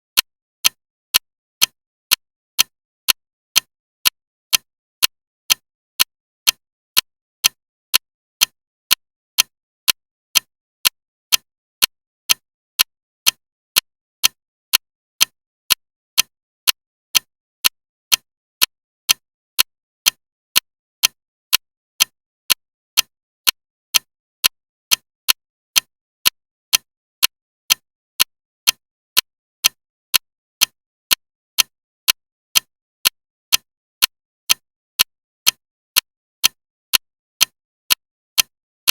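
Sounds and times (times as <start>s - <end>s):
clock ticking loudly: 22.0s - 28.8s, 29.6s - 38.9s.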